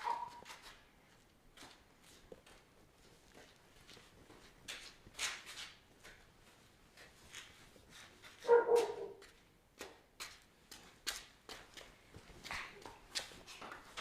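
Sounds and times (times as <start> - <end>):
dog barking: 0.0 - 0.4, 8.4 - 9.2.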